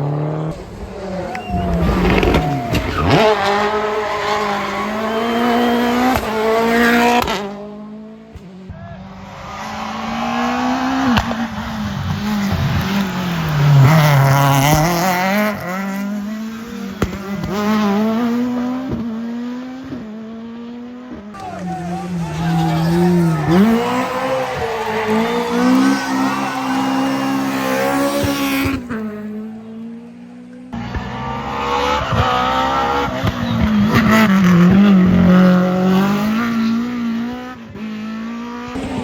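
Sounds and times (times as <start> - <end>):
rally car engines at full throttle: 0.0 - 39.0
tyre squeal: 1.2 - 6.2, 21.4 - 29.0.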